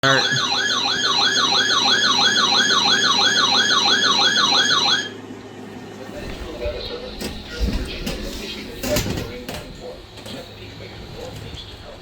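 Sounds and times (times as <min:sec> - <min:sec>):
warbling electronic siren alarm: 0:00.0 - 0:05.2.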